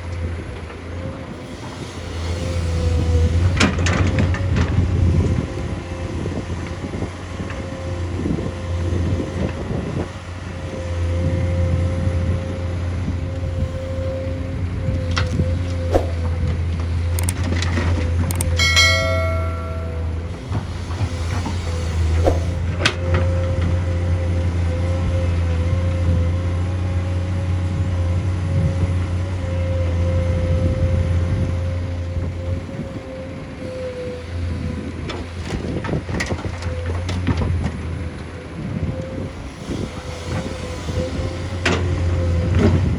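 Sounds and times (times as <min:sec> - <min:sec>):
diesel engine running: 0:00.0 - 0:42.9
machinery whine: 0:01.1 - 0:27.4, 0:38.0 - 0:42.9
metal clanks and knocks: 0:17.2 - 0:22.6
high whine: 0:18.3 - 0:22.6
sharp metallic knock: 0:18.4 - 0:20.3.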